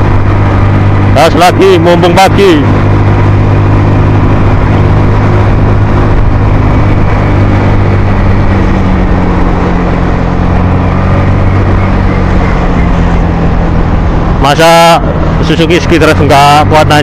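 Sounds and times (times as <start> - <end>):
scooter engine labouring: 0.0 - 17.0.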